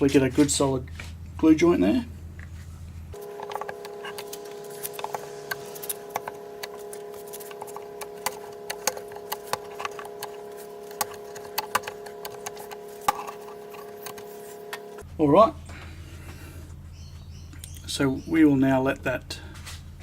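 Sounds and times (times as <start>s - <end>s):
steady hum: 0.0s - 20.0s
tools clicking and tapping: 3.3s - 15.0s.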